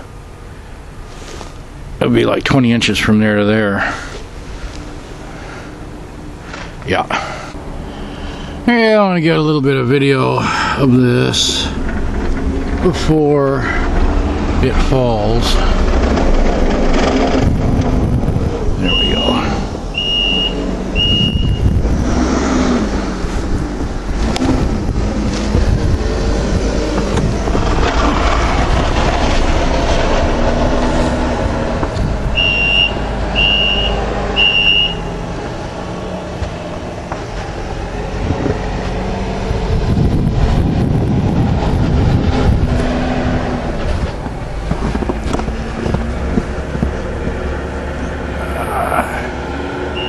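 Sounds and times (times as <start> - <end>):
heavy vehicle engine rumbling: 0.0 - 50.0
backup alarm beeping: 18.8 - 21.8, 32.4 - 35.2.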